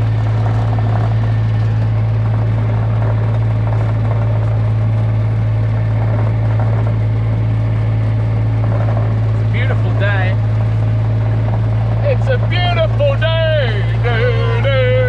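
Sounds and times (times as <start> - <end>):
vehicle engine humming steadily: 0.0 - 15.0.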